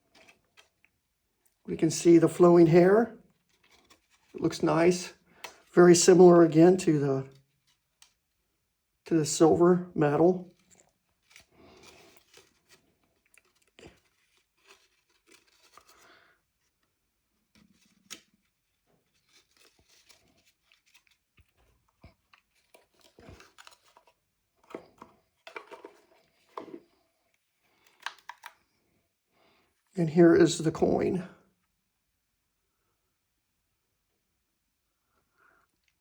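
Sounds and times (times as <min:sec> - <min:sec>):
packaging clicks and rustles: 0:10.5 - 0:16.2, 0:17.6 - 0:28.6.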